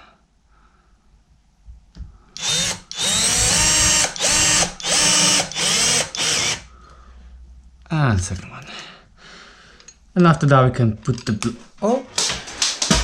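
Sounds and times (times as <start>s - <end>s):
power drill driving screw into wood: 2.4s - 6.6s.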